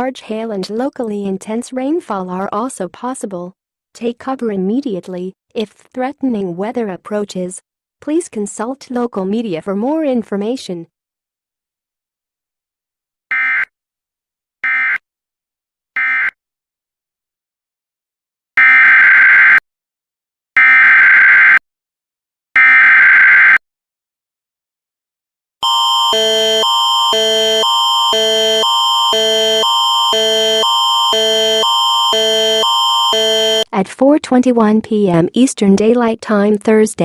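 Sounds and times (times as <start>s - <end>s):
warbling data tone bursts: 25.6s - 33.6s
alert attention signal tones: 25.6s - 33.7s.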